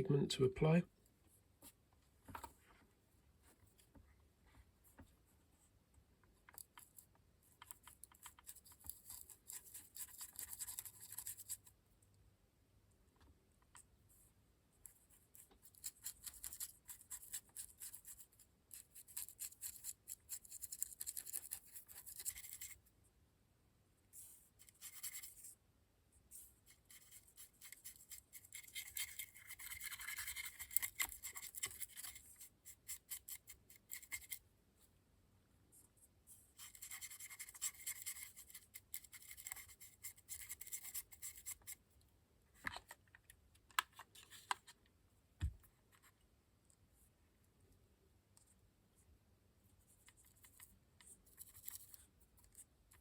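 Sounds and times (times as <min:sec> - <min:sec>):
small brush scratching: 0:06.4 - 0:11.8, 0:14.8 - 0:22.9, 0:24.1 - 0:25.6, 0:26.2 - 0:34.4, 0:35.8 - 0:41.8, 0:49.7 - 0:53.0.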